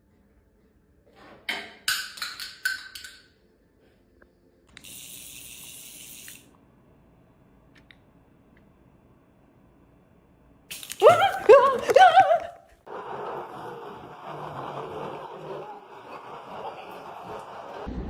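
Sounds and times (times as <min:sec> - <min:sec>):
running water hiss: 0:04.8 - 0:06.5.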